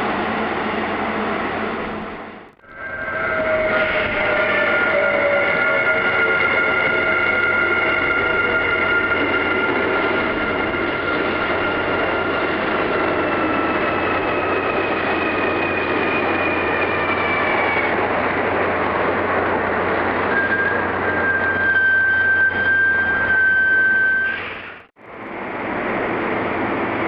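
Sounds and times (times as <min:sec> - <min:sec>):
electric train running past: 0:00.0 - 0:27.0
high-pitched whine: 0:01.4 - 0:19.5.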